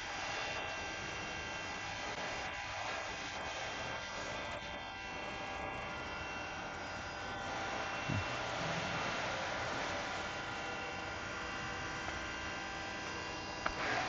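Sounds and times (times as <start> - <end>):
hiss of cutting: 0.0 - 5.5, 7.4 - 11.4, 13.6 - 14.0
lathe machine whine: 0.0 - 14.0.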